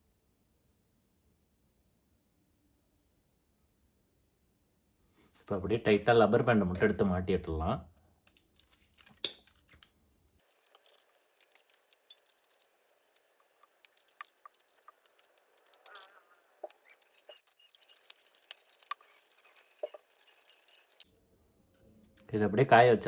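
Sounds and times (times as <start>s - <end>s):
rubber bands snapping: 8.3s - 9.9s.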